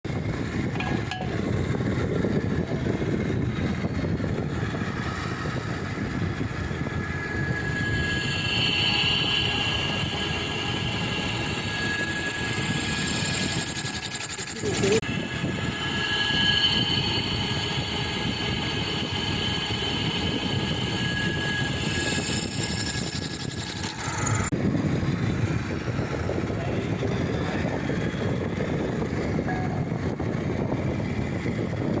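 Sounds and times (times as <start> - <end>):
high machine whine: 0.1 - 31.9
drilling machine drone: 0.2 - 24.5.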